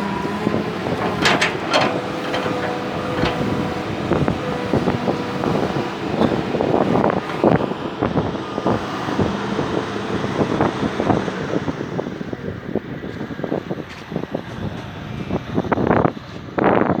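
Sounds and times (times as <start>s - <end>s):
excavator engine running: 0.0s - 16.0s
wind buffeting microphone: 0.0s - 17.0s
metal knocks and clanks: 0.8s - 5.0s.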